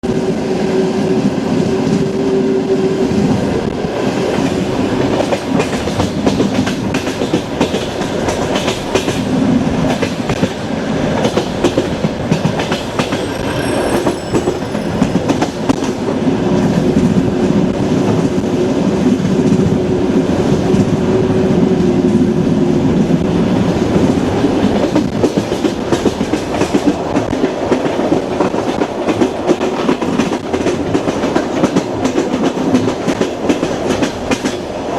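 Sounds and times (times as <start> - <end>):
wheels clacking over rail joints: 11.2 - 15.9
faint high squeal: 12.7 - 15.9.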